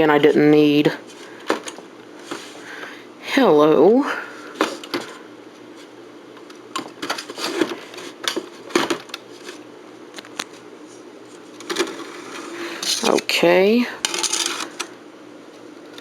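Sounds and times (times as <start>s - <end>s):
faint steady hum: 0.0s - 16.0s.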